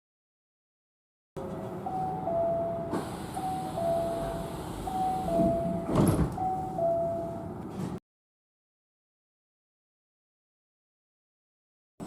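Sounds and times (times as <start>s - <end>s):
train background noise: 1.4s - 8.0s
two-note door chime: 1.8s - 7.5s.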